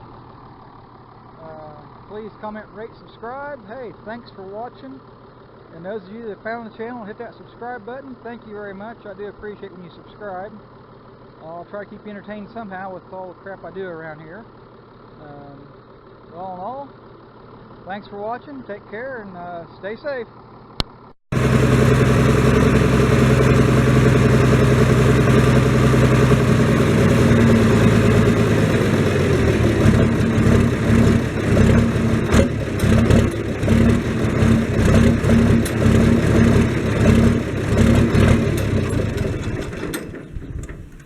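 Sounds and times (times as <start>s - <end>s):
tractor engine running: 0.0s - 5.7s, 21.3s - 41.0s.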